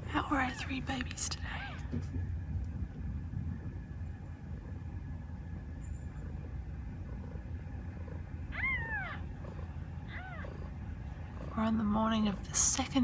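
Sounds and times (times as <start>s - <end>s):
cat purring: 0.0s - 13.0s
kittens mewing: 8.5s - 13.0s.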